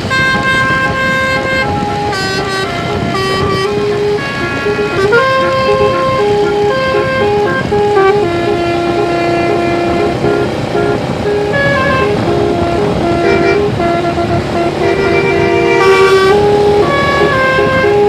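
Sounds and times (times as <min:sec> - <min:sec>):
musical air horn melody: 0:00.0 - 0:18.0
vehicle engine rumble: 0:00.0 - 0:18.0.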